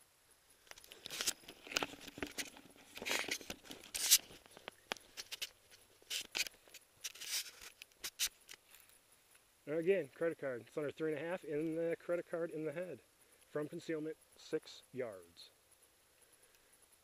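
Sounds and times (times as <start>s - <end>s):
clothing and gear rustling: 0.8s - 9.0s.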